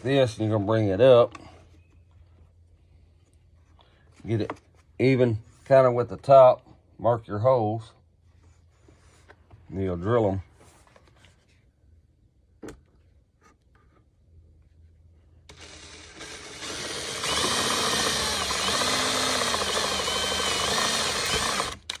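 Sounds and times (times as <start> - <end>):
electric drill whining: 15.5 - 22.0.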